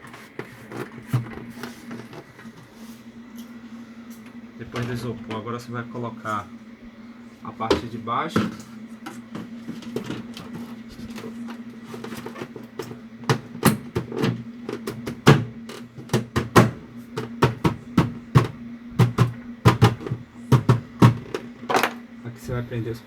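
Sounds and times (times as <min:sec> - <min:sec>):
steady low hum: 0:00.0 - 0:23.0
plastic panels clicking and knocking: 0:09.3 - 0:22.0.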